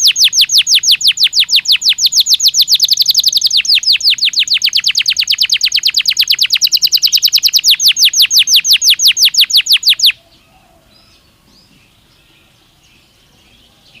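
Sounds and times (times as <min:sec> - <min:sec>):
canary singing a fast trill: 0:00.0 - 0:10.2
faint soft bird chirps: 0:00.0 - 0:14.0.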